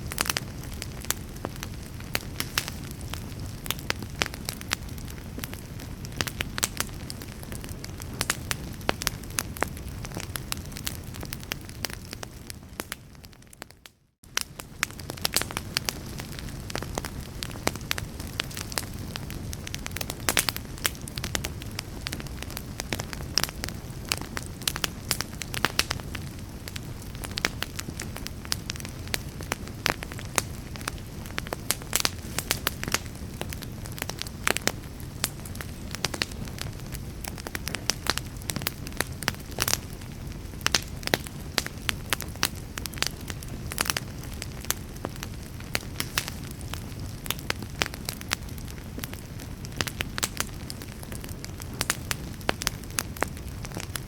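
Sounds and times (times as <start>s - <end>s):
burning wood crackling: 0.0s - 54.0s
fire rumbling: 0.0s - 54.0s.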